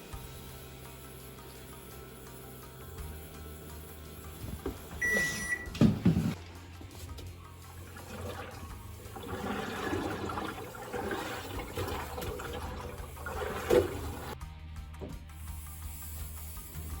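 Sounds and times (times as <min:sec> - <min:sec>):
washing machine drum turning: 0:04.4 - 0:06.4, 0:07.8 - 0:14.4
water and laundry sloshing: 0:04.4 - 0:14.4
washing machine thump: 0:04.5 - 0:06.4.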